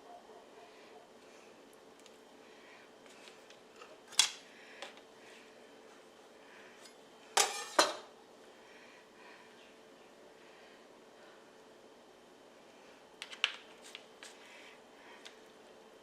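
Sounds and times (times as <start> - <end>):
utensils clinking on dishes: 6.8 - 8.1.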